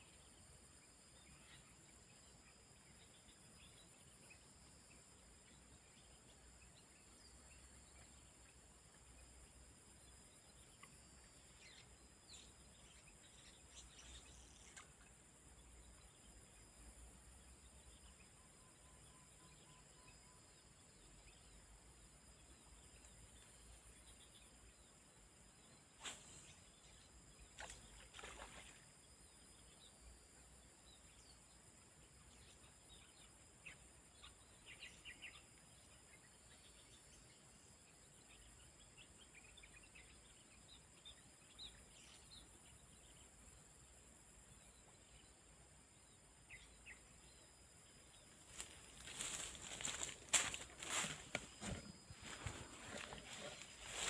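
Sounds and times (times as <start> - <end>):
high insect drone: 42.4 - 54.0.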